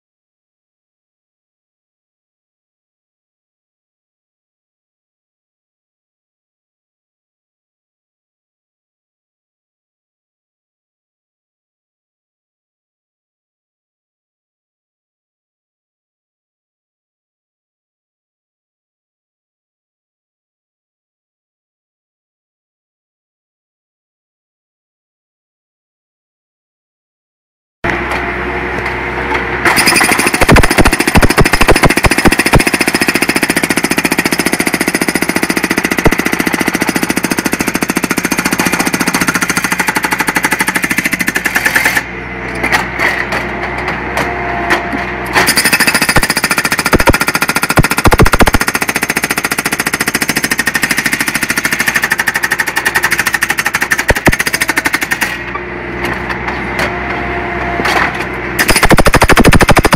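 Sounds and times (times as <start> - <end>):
machine engine running: 27.9 - 49.0, 53.8 - 59.9
hydraulic breaker hammering: 29.6 - 42.0, 44.8 - 55.5, 57.8 - 59.9.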